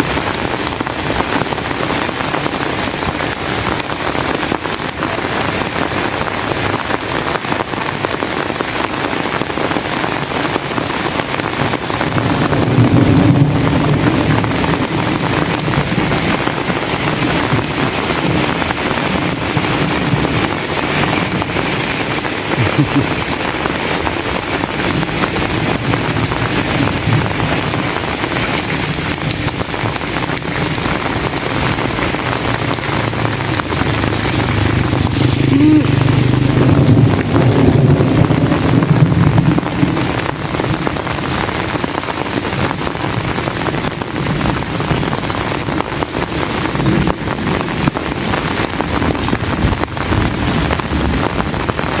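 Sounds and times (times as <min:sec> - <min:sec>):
heavy rain falling: 0:00.0 - 0:52.0
low rumble: 0:30.3 - 0:39.8.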